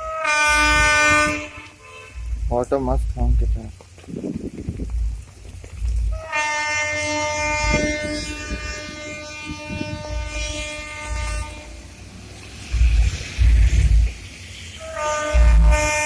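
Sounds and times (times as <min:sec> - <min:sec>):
locomotive horn blast: 0:00.0 - 0:02.6, 0:06.1 - 0:14.0, 0:14.7 - 0:16.0
wind thumps on microphone: 0:00.5 - 0:16.0.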